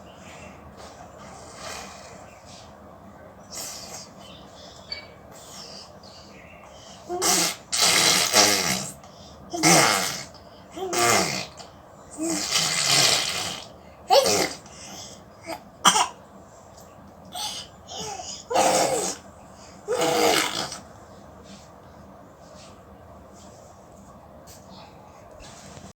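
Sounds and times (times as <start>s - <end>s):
baby making spluttering noises: 7.1s - 14.7s, 17.4s - 19.2s, 19.9s - 20.8s.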